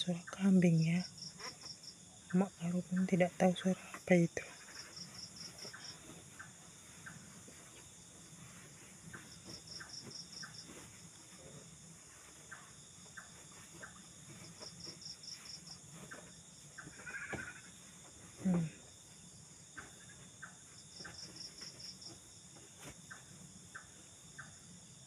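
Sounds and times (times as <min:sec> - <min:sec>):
insect chorus drone: 0:00.0 - 0:25.0.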